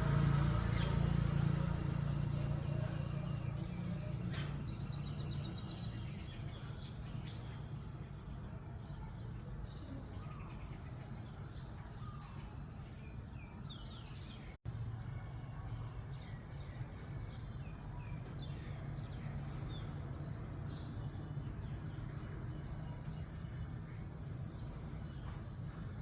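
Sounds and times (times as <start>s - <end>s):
birds chirping: 0.0s - 14.6s.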